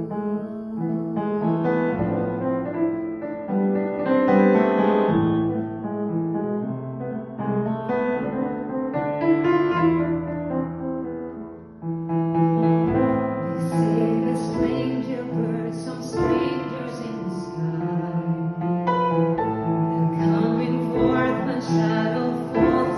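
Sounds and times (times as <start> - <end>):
slow piano accompaniment: 0.0 - 22.9
person singing: 13.4 - 18.7, 19.9 - 22.9.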